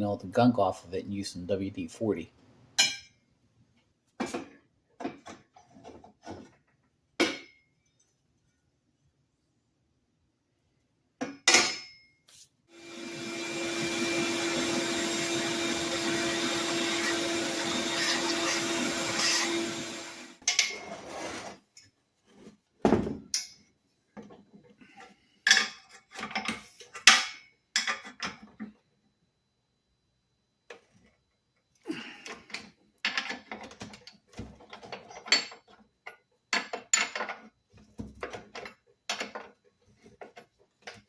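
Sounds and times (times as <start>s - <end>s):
electric power tool running: 12.7s - 20.4s.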